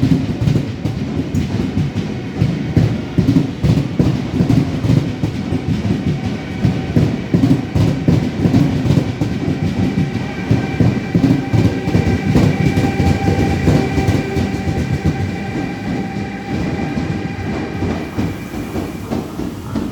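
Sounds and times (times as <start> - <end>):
train rumbling on track: 0.0 - 19.9.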